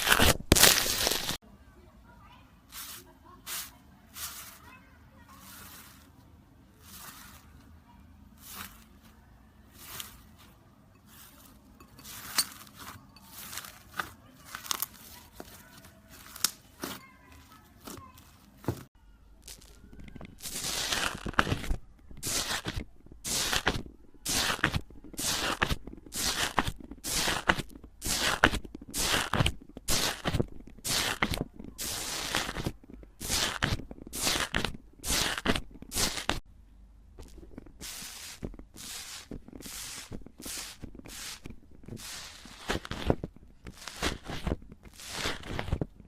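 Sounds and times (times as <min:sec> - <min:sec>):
slime being squished: 0:00.0 - 0:01.4, 0:19.4 - 0:36.4, 0:37.2 - 0:46.0.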